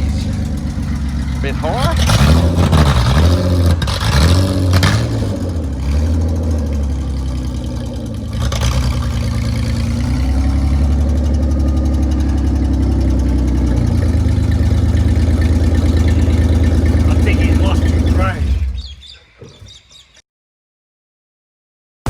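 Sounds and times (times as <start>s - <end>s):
car engine running: 0.0s - 19.7s.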